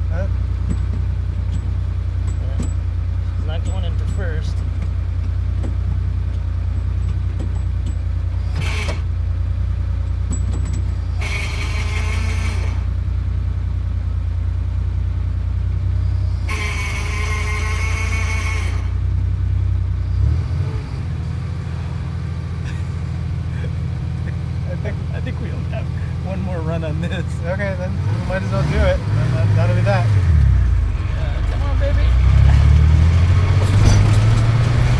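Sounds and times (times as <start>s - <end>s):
sports car engine idling: 0.0s - 11.3s, 12.7s - 16.6s, 21.0s - 28.0s.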